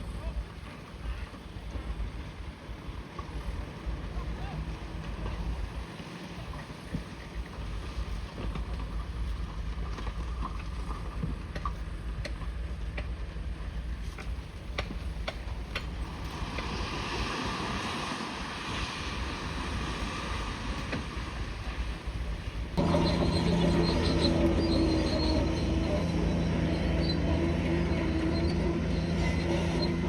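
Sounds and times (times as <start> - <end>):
bulldozer diesel engine rumbling: 0.0 - 30.0
hiss: 15.3 - 22.6.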